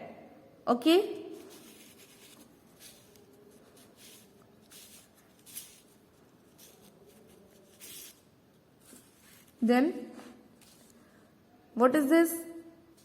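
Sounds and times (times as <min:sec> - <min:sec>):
faint short scratching: 0:01.3 - 0:09.6.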